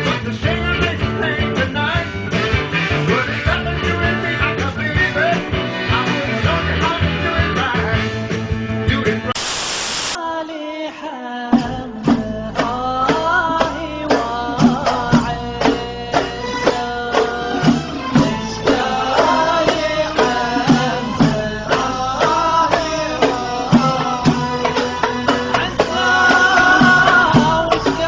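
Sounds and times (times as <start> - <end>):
steady drum beat: 17.1 - 28.0.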